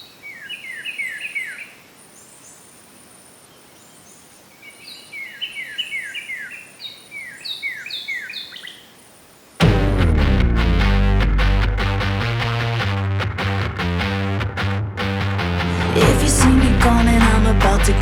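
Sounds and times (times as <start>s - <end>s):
songbirds chirping: 0.0s - 9.5s.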